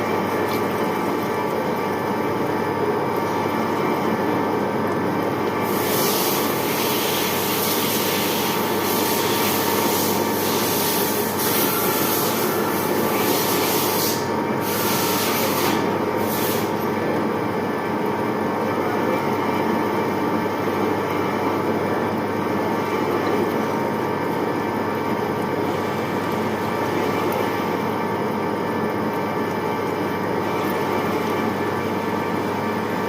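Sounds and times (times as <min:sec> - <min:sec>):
machine tool whine: 0:11.0 - 0:13.6.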